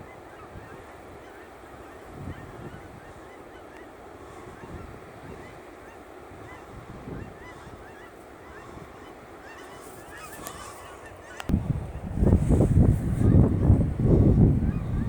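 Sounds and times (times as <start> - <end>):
wind buffeting microphone: 0.0 - 3.4, 4.2 - 15.0
geese honking: 0.0 - 15.0.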